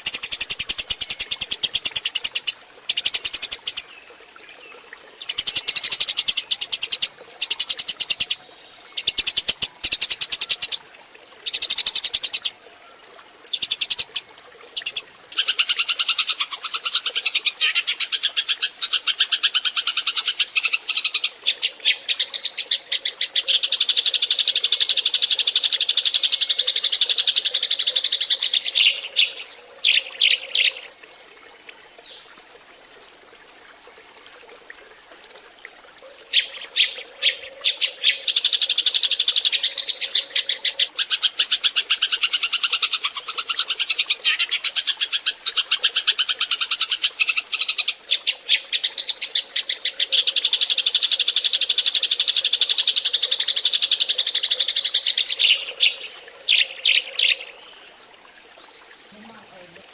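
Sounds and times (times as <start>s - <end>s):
sparrows chirping: 13.5s - 14.2s.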